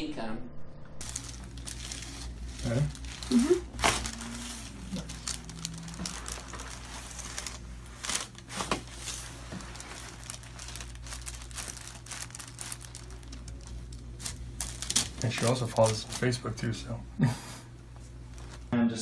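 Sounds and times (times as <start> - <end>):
low hum: 0.0 - 14.9
crinkling and rustling: 1.0 - 16.6, 18.0 - 18.7.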